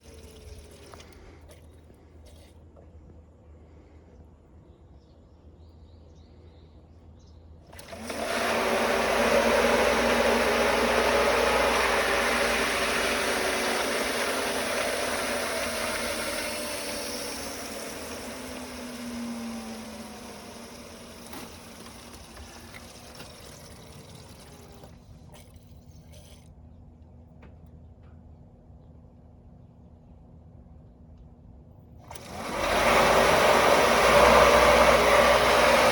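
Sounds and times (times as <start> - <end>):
water pump drawing air: 0.0 - 2.6, 7.7 - 26.5, 32.0 - 35.9.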